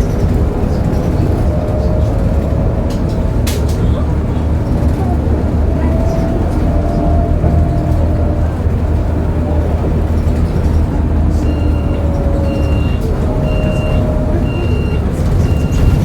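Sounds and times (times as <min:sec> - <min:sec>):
bus engine rumble with whine: 0:00.0 - 0:16.0.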